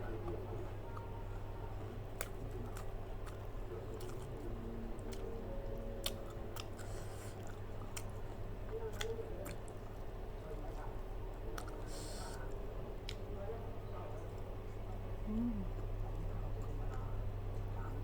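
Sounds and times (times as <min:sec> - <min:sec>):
steady low hum: 0:00.0 - 0:18.0
person chewing and crunching food: 0:02.0 - 0:10.1.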